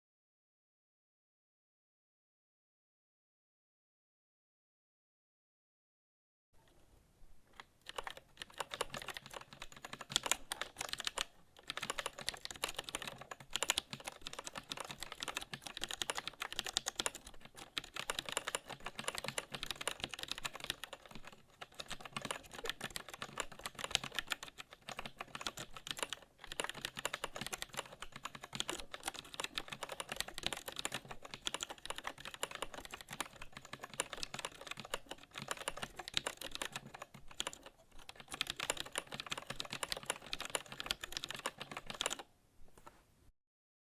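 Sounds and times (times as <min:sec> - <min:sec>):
fast keyboard typing: 0:07.6 - 0:42.3.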